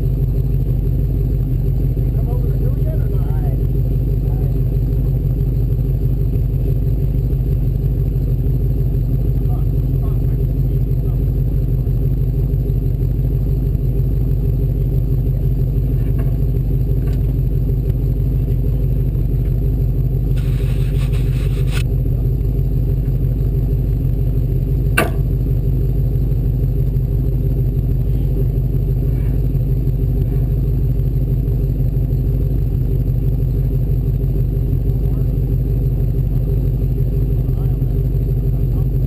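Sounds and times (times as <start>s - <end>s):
engine droning: 0.0s - 39.0s
sharp knock: 25.0s - 25.3s.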